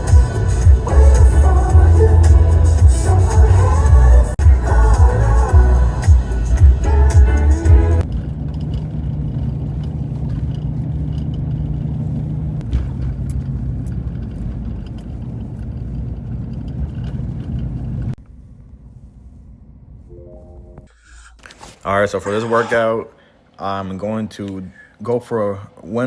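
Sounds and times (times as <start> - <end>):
car engine and road rumble: 0.0 - 20.1.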